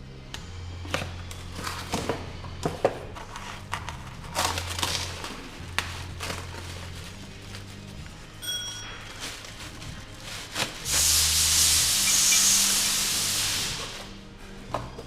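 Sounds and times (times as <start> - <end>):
quiet background music: 0.0 - 15.0
metal tool clinking: 8.4 - 9.1
aerosol spray hissing: 10.9 - 14.2.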